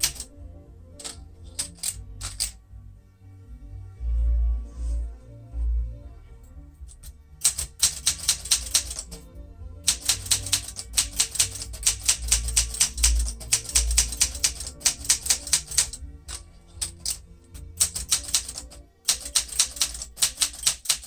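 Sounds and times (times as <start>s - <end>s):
manual typewriter typing: 0.0s - 0.3s, 1.0s - 2.6s, 7.0s - 9.2s, 9.9s - 21.0s
background music: 0.0s - 21.0s.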